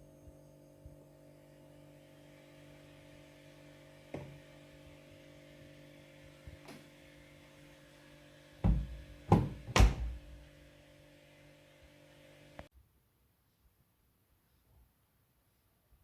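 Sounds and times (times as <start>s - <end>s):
washing machine humming: 1.0s - 12.5s
heavy thuds: 8.6s - 10.4s
washing machine click: 8.6s - 10.4s.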